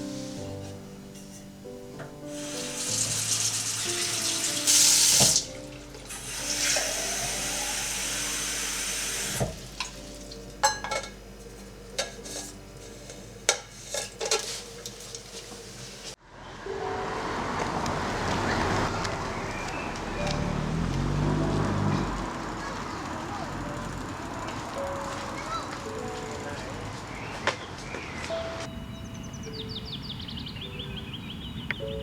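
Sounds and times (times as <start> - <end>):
soft music: 0.0 - 32.0
tap water running into sink: 2.4 - 10.0.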